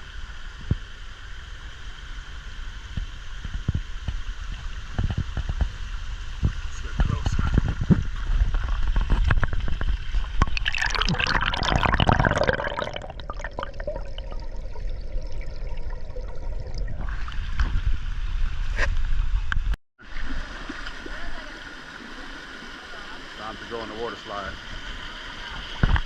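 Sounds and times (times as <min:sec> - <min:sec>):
low rumble on microphone: 0:02.8 - 0:20.5
stream pouring over rocks: 0:02.9 - 0:18.2, 0:20.0 - 0:26.0.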